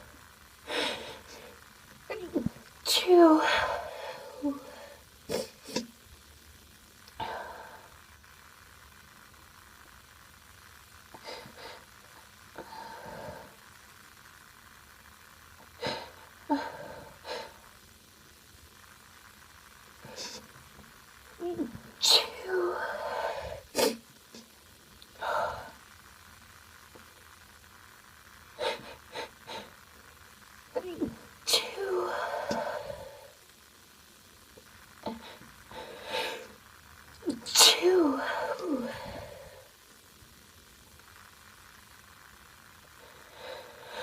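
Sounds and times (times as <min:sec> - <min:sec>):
quiet breathing: 0:00.0 - 0:01.8, 0:03.4 - 0:05.9, 0:07.1 - 0:08.4, 0:11.1 - 0:13.8, 0:15.6 - 0:17.9, 0:20.0 - 0:20.8, 0:22.4 - 0:24.5, 0:25.1 - 0:26.1, 0:30.8 - 0:33.6, 0:35.0 - 0:40.1, 0:42.9 - 0:44.0.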